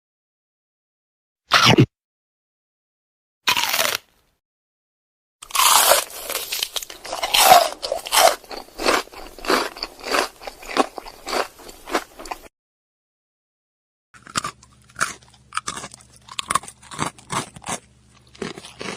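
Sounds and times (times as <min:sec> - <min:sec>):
crunchy bite into food: 0:03.5 - 0:04.1, 0:05.4 - 0:12.5, 0:14.2 - 0:18.9
crunchy chewing: 0:03.5 - 0:04.1, 0:05.4 - 0:12.5, 0:14.2 - 0:18.9.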